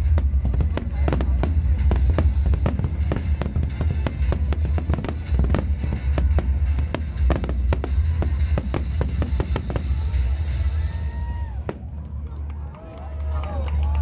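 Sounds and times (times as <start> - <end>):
fireworks cracks and bangs: 0.0 - 12.9
deep rumble: 0.0 - 14.0.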